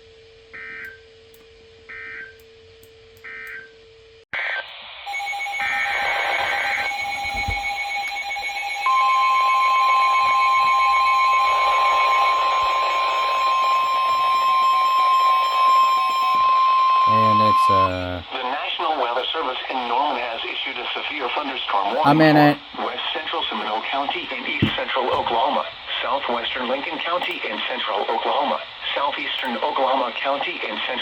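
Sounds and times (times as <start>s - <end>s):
alert data bursts: 5.1s - 18.2s
steady beeping tones: 5.1s - 18.2s
loud steady alarm tone: 5.1s - 18.3s, 24.6s - 25.4s.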